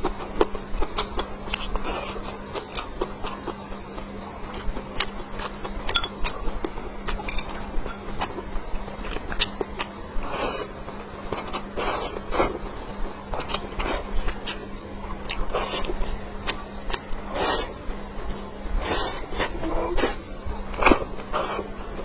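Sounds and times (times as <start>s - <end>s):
faint electrical hum: 0.0s - 22.0s.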